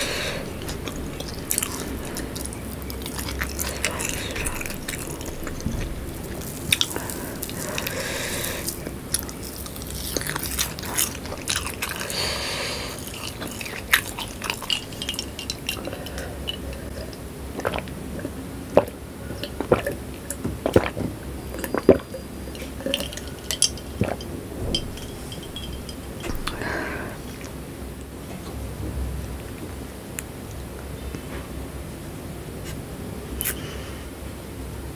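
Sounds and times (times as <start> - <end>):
crunchy chewing: 0.0 - 24.3.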